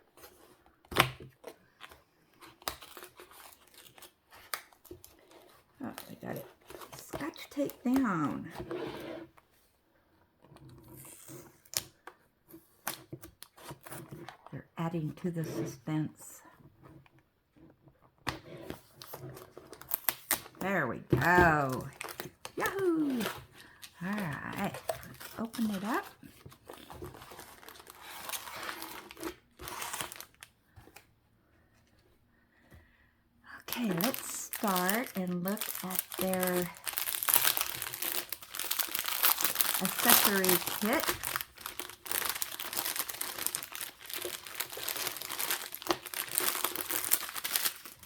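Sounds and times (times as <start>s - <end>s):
crinkly packaging rustling: 0.1s - 8.9s, 18.6s - 31.1s, 33.6s - 48.0s.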